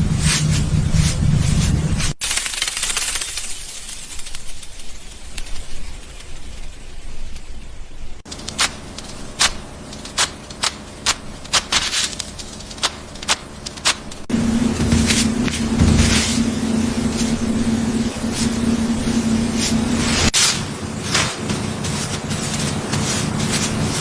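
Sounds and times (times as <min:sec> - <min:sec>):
cloth rustling: 0:08.3 - 0:24.0.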